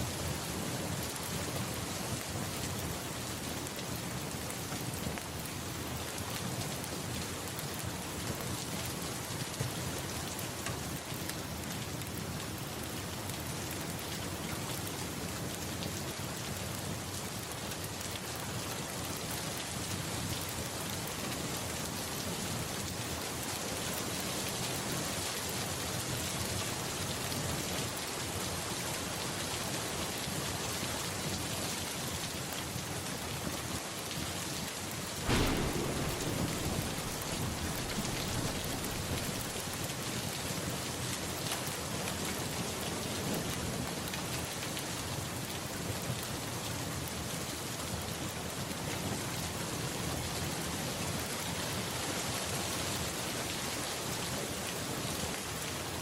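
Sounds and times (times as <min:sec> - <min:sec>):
steady rain hiss: 0:15.4 - 0:45.5
thunderclap rumbling: 0:35.2 - 0:40.2.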